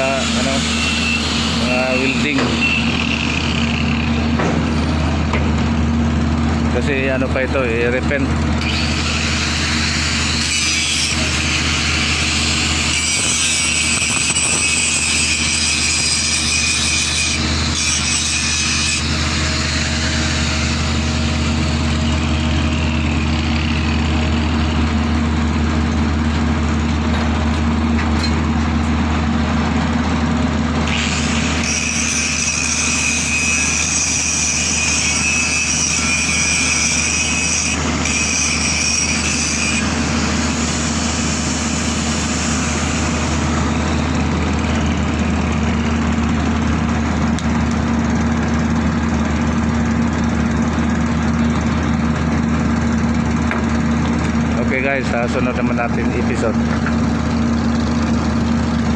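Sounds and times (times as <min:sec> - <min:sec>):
construction machinery engine humming: 0:00.0 - 0:09.0, 0:19.2 - 0:30.9, 0:39.8 - 0:58.9.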